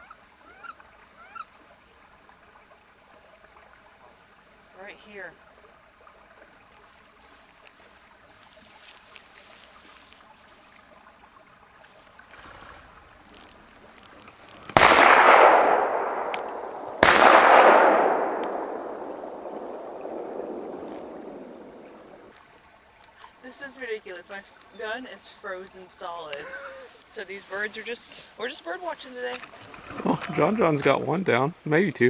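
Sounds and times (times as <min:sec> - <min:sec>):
shotgun shots: 0:14.8 - 0:22.3.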